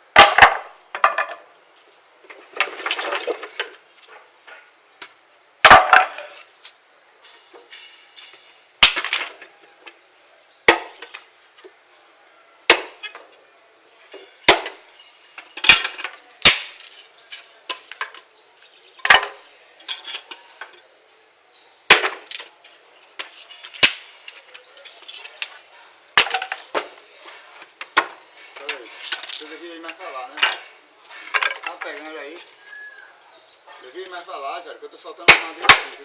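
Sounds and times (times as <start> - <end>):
axe chopping firewood: 0.1 - 1.4, 5.6 - 6.3, 8.8 - 9.4, 10.6 - 11.2, 12.7 - 13.3, 14.4 - 17.0, 19.0 - 19.4, 21.9 - 22.5, 23.2 - 24.4, 25.4 - 27.0, 27.8 - 29.2, 35.3 - 36.0.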